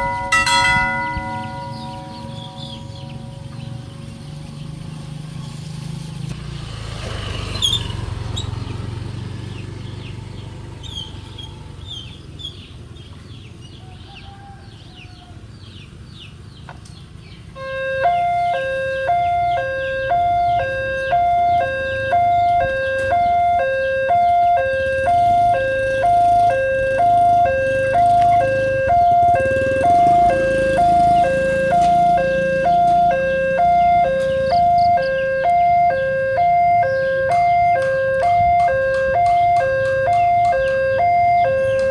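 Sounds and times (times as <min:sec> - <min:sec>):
level crossing alarm ding-dong: 0:00.0 - 0:03.5
road vehicle passing rumble: 0:00.0 - 0:41.9.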